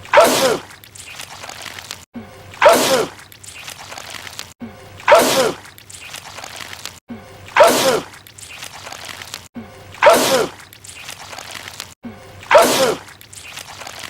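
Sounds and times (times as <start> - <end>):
man sneezing: 7.6 - 8.1, 12.5 - 13.0.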